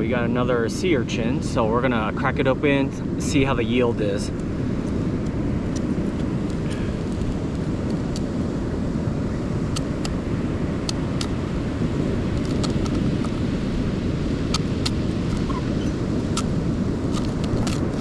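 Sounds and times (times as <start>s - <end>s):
ocean surf rumbling: 0.0s - 18.0s
shell cracking: 12.3s - 13.4s, 16.3s - 16.5s, 17.1s - 18.0s.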